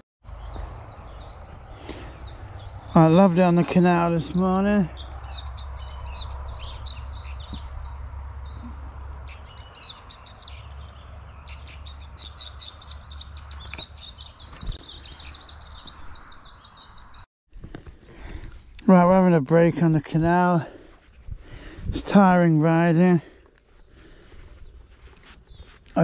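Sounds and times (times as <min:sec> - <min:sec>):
warblers singing: 0:00.3 - 0:17.3, 0:22.0 - 0:24.1.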